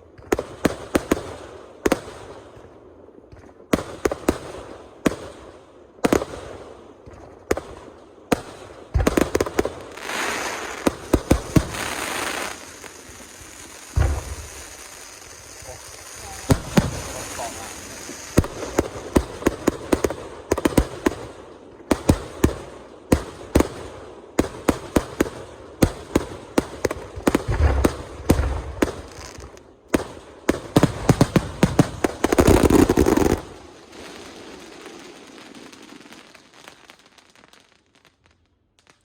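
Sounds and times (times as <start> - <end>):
crackling fireworks: 0.0 - 39.0
fireworks bangs: 7.0 - 38.2.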